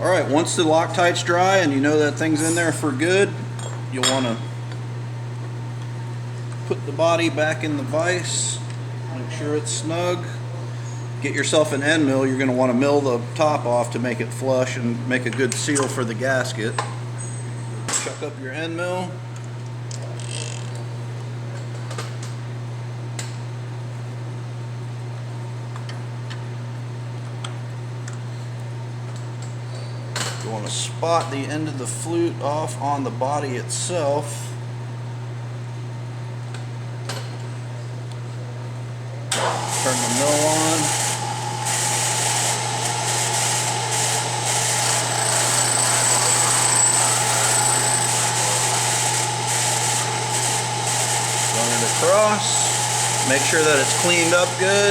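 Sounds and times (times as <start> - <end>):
milling machine motor hum: 39.3 - 54.9
high whine: 43.1 - 54.9.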